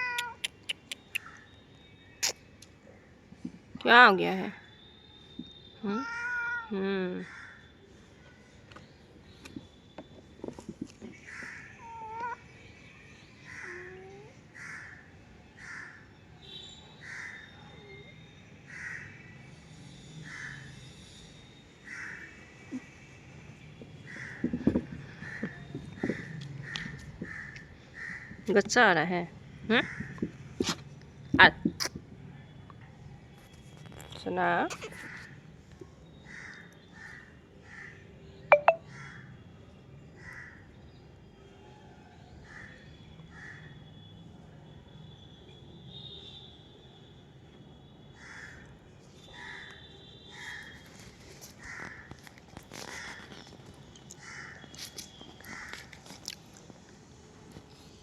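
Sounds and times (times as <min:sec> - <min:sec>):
cat mewing: 0:00.0 - 0:00.6, 0:05.9 - 0:06.7
crow cawing: 0:14.6 - 0:15.0, 0:26.1 - 0:28.4, 0:48.2 - 0:48.6, 0:51.6 - 0:52.2, 0:54.2 - 0:54.7.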